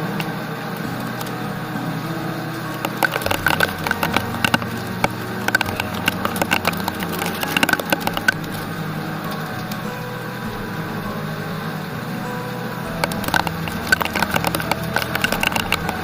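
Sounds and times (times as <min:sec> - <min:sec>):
steady low hum: 0:00.0 - 0:16.0
sharp clicks and taps: 0:02.7 - 0:08.6, 0:13.0 - 0:16.0.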